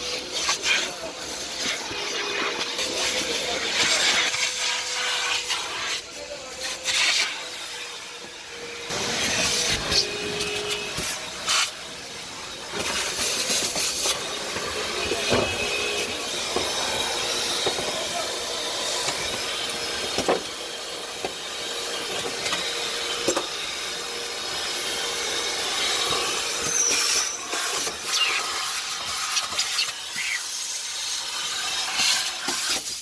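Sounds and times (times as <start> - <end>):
vacuum cleaner running: 0.0 - 33.0.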